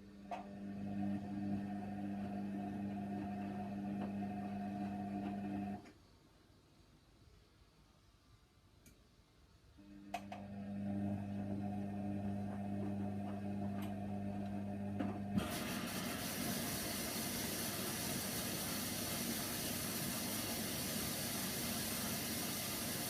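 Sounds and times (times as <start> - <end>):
washing machine low hum: 0.0 - 5.8, 9.8 - 23.0
water rushing into machine: 15.4 - 23.0.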